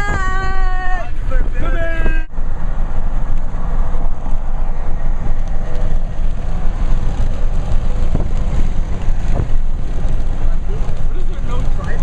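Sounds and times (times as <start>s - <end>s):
highway traffic rumble: 0.0s - 12.0s.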